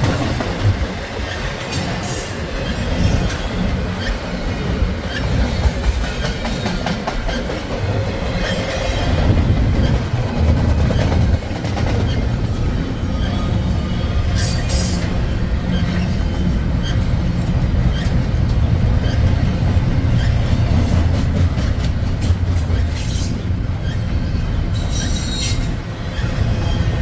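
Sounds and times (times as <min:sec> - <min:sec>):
freight train rumbling past: 0:00.0 - 0:27.0
high-pitched wheel squeals: 0:22.8 - 0:27.0.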